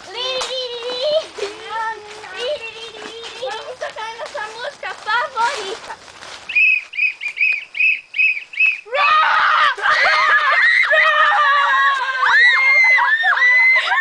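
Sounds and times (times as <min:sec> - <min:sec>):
voices screaming: 0:06.5 - 0:14.0.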